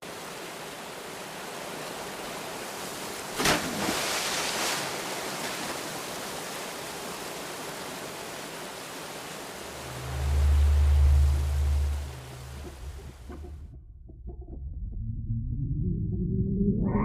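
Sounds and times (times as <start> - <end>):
rushing whoosh: 9.8 - 13.6.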